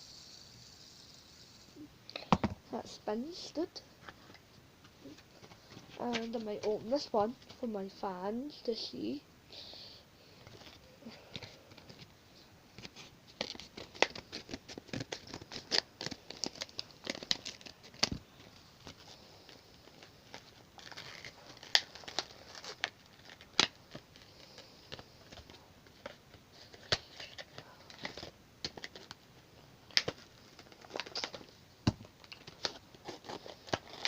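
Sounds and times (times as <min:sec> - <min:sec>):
packaging rustling: 0:12.8 - 0:29.2, 0:29.9 - 0:34.0
plastic packaging clicks and crinkles: 0:12.8 - 0:34.0.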